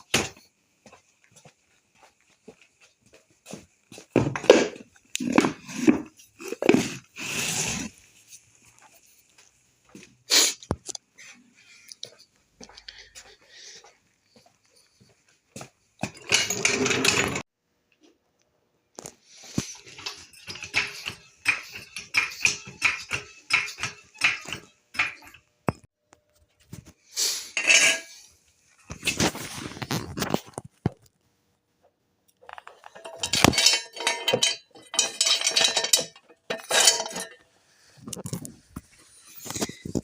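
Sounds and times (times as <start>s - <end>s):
metal tools clinking and clattering: 16.0s - 17.4s, 19.5s - 25.4s, 27.6s - 28.2s, 32.5s - 37.5s.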